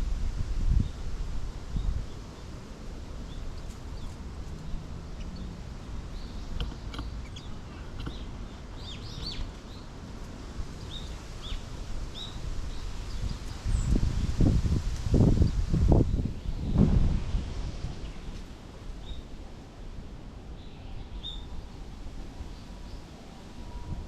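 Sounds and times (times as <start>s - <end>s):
small birds chirping: 3.2s - 10.0s, 10.7s - 14.3s
low background rumble: 15.9s - 22.6s.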